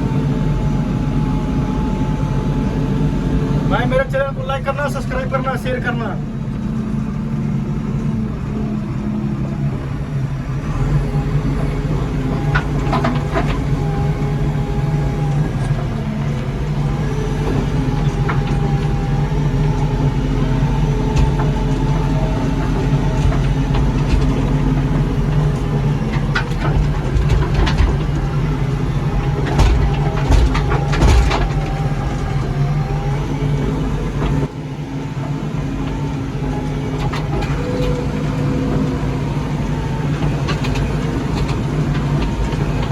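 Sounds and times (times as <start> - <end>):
diesel engine running: 0.0 - 42.9
knocks and rattles: 10.9 - 34.5.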